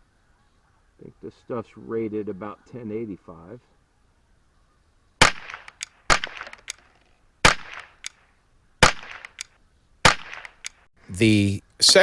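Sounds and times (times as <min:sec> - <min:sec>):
rifle shots: 0:05.2 - 0:08.2, 0:08.8 - 0:10.9
faint cracks: 0:05.2 - 0:08.3, 0:08.9 - 0:10.9.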